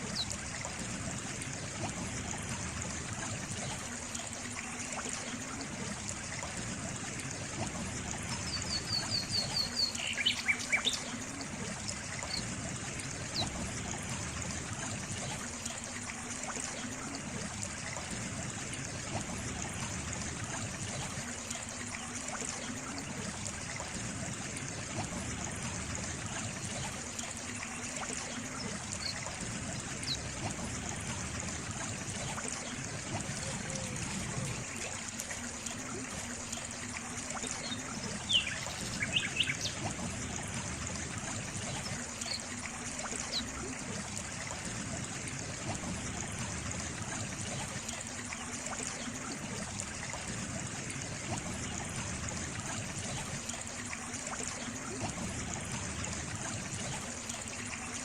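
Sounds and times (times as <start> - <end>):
water trickling: 0.0 - 58.0
birds chirping: 8.5 - 11.1, 37.6 - 39.9.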